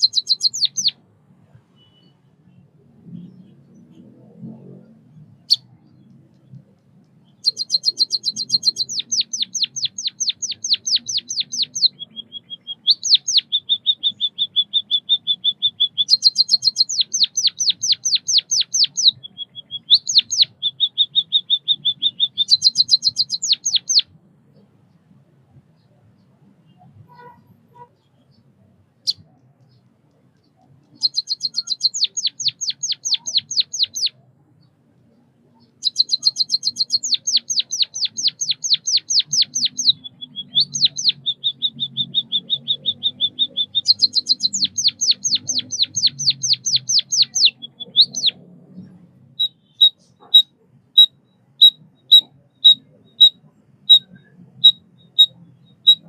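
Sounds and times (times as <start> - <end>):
bird high sweeping chirps: 0.0 - 1.0, 7.3 - 24.1, 30.9 - 34.2, 35.6 - 56.0.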